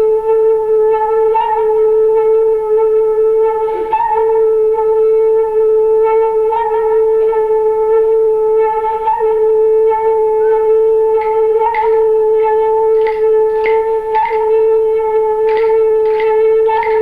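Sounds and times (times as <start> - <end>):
light taps or plucked notes: 11.2 - 17.0.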